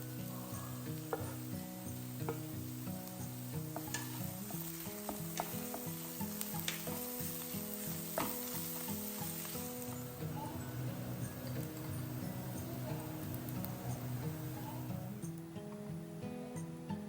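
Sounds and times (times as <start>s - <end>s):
food sizzling in hot oil: 0.0s - 15.4s
soft background music: 0.0s - 17.0s
spoon clicking against pan: 0.5s - 10.0s.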